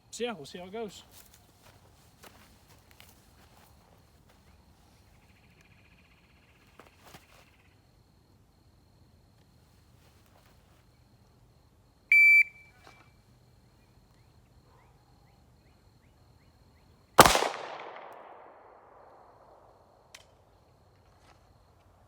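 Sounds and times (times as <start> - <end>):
shot timer beep: 12.1 - 12.6
pistol shot: 17.2 - 19.6.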